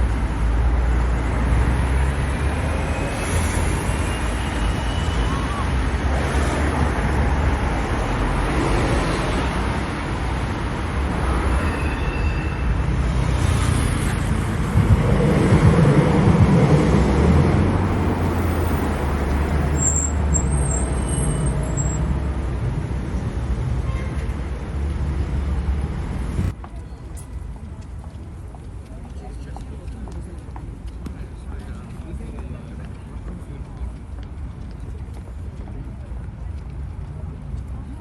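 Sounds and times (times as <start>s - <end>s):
heavy vehicle rumbling past: 0.0s - 26.6s
passing traffic rumble: 0.0s - 38.0s.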